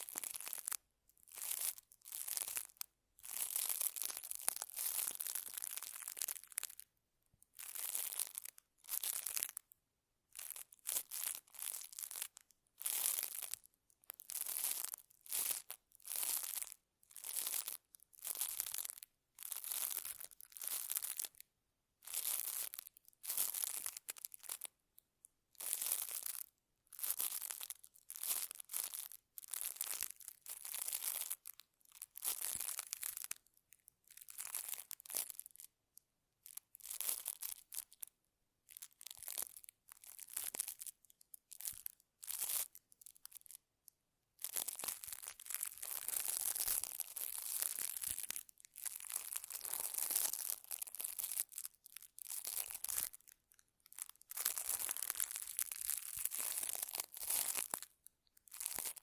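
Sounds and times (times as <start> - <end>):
close rustling and crinkling: 44.4 - 59.0.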